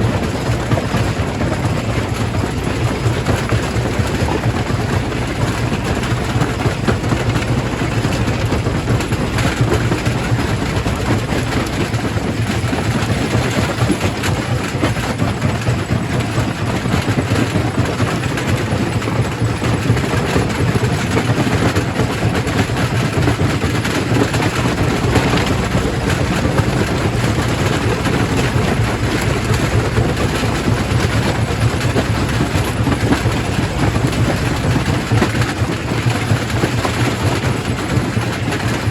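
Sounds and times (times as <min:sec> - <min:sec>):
rock crusher grinding: 0:23.2 - 0:38.4
low hum: 0:23.8 - 0:36.1.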